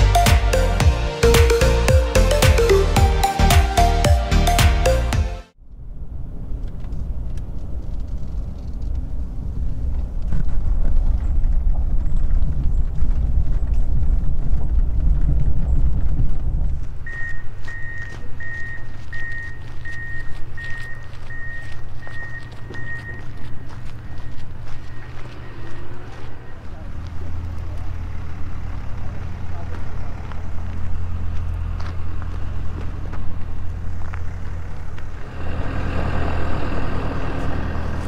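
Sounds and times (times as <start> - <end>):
vehicle engine rumble: 0.0 - 38.0
vehicle warning beep: 17.0 - 26.6.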